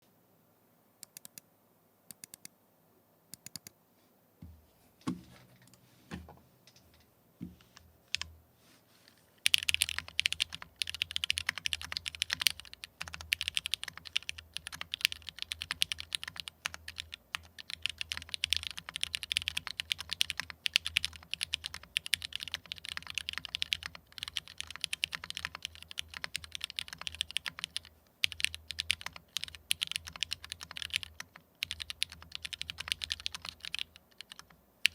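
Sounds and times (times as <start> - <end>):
mechanical keyboard typing: 9.4 - 34.9.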